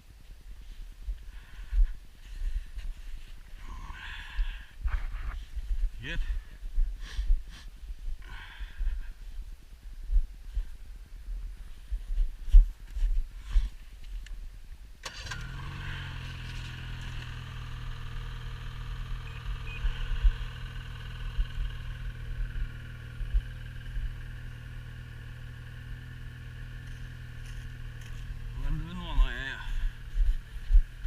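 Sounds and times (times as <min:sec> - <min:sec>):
wind rumble on microphone: 0:04.8 - 0:08.2, 0:28.5 - 0:31.0
engine starting and idling: 0:15.0 - 0:30.8.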